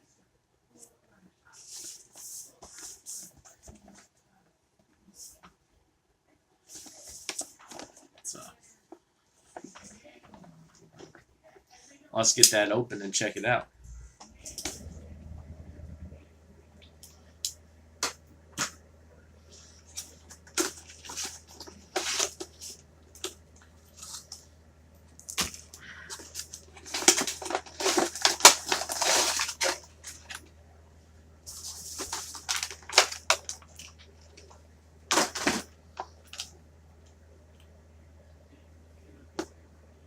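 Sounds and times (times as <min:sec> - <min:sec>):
plastic packaging crinkling: 0:19.5 - 0:24.5, 0:25.2 - 0:30.5, 0:31.5 - 0:36.5.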